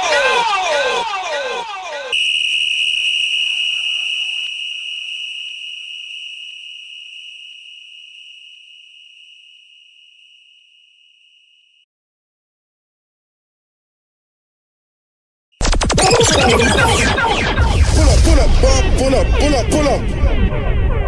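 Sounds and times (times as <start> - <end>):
high steady ringing tone: 2.1 - 11.9
short noisy tail: 15.6 - 21.0.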